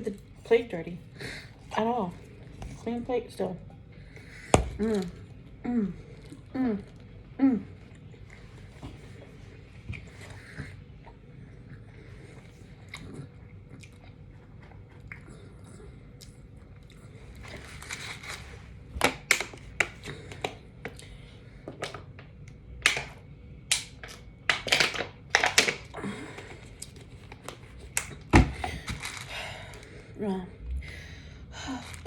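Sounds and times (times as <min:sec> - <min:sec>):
person chewing and smacking: 0:07.8 - 0:17.6.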